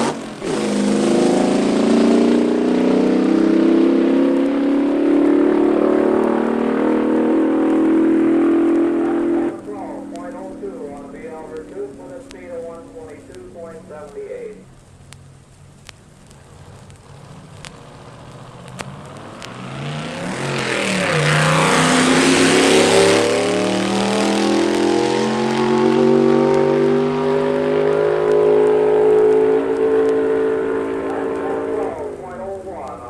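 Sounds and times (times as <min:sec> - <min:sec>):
drag racing car engine high revs: 0:00.0 - 0:14.1, 0:16.7 - 0:33.0
faint clicks: 0:09.6 - 0:19.6.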